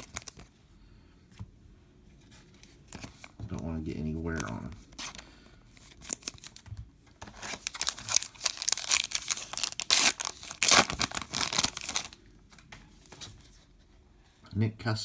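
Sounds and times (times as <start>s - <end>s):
foil wrapper crackling and tearing: 0.0s - 0.4s, 5.9s - 12.2s.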